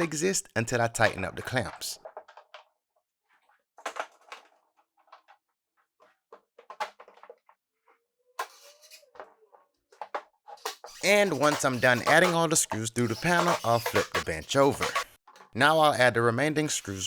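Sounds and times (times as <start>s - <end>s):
bar clamps clicking and knocking: 10.6s - 15.0s.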